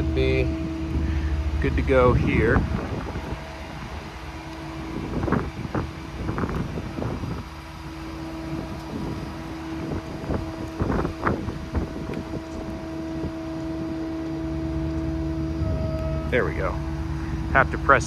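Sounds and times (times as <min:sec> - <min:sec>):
diesel engine idling: 0:00.0 - 0:18.0
hydraulic hum: 0:00.0 - 0:18.0.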